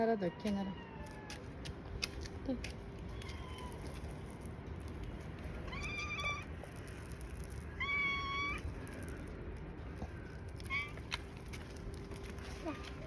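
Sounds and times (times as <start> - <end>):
cat meowing: 3.1 - 4.0, 5.6 - 6.5, 7.7 - 8.9, 10.6 - 11.3.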